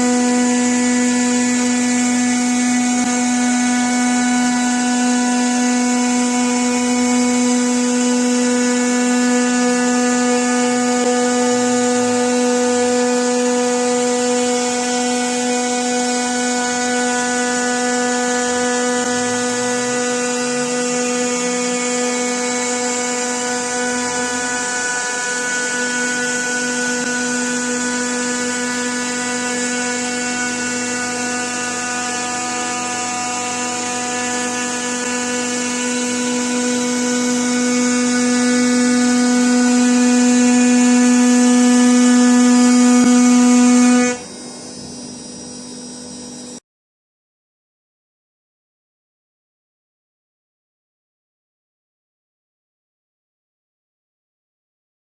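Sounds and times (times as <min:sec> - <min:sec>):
milling machine whining: 0:00.0 - 0:46.6.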